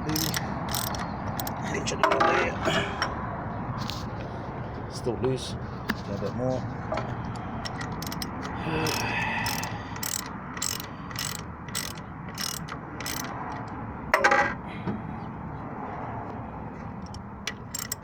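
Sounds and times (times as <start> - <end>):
socket ratchet clicking: 0.1 - 1.6, 7.7 - 13.8, 17.0 - 18.0.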